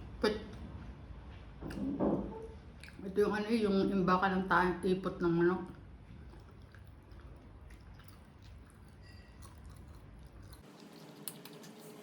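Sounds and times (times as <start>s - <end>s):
chewing and wet mouth clicks: 2.8s - 3.1s, 5.7s - 12.0s.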